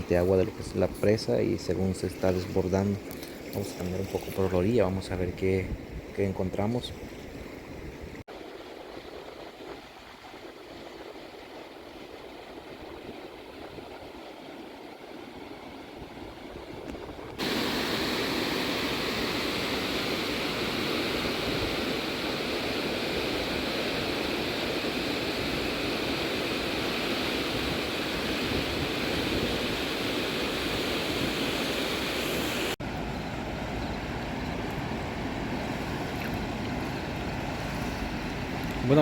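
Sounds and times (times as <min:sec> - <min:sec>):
river water rushing: 0:17.4 - 0:39.0.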